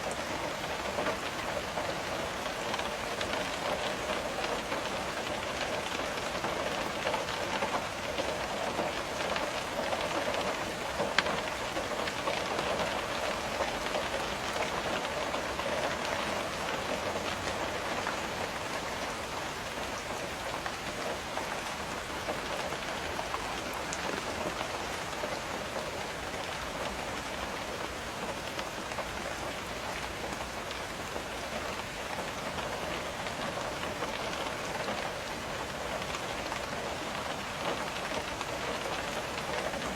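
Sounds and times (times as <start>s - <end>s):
rain pattering on a window: 0.0s - 39.9s.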